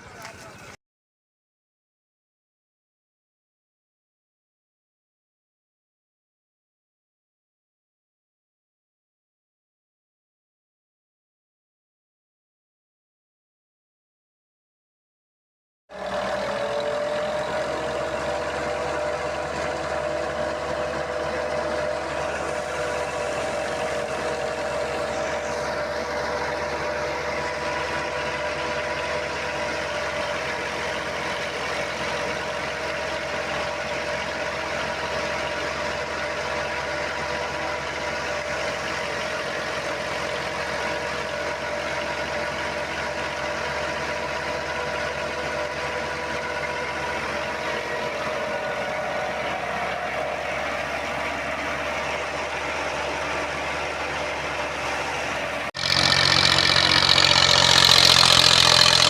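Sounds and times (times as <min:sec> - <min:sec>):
thresher whine and clatter: 0:16.0 - 0:59.0.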